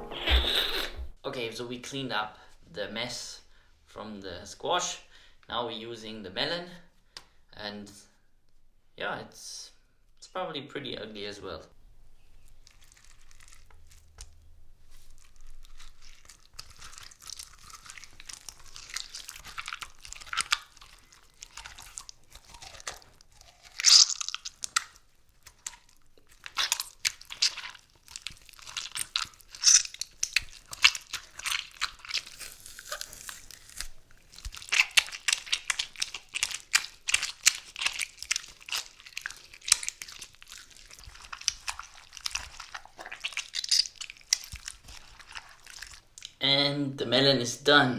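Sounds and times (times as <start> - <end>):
melon being smashed: 0.0 - 1.2.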